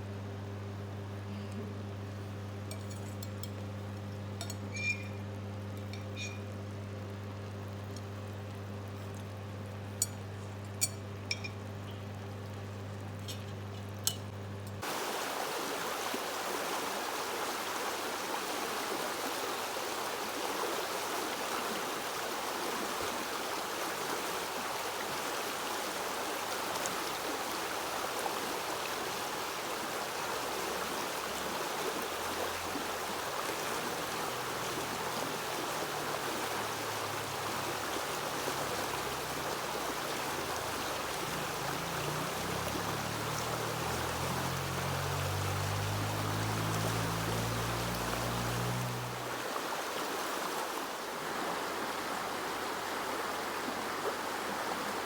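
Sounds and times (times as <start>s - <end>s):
river water rushing: 14.8s - 55.0s.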